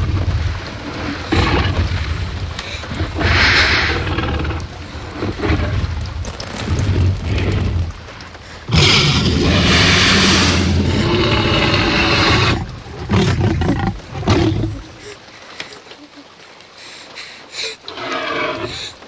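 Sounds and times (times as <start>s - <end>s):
loud dinosaur roar: 0.0s - 5.9s, 6.6s - 15.0s, 17.9s - 19.0s
deep booming rumbles: 0.0s - 14.9s.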